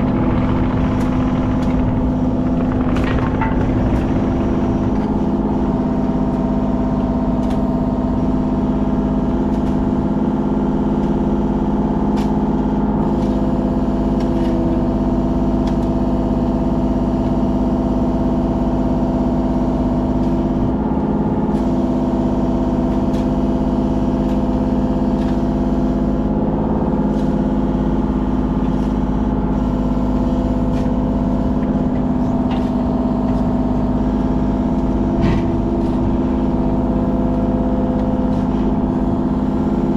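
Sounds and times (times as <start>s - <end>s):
faint clicks and knocks: 0.0s - 6.4s
excavator diesel engine running: 0.0s - 39.9s.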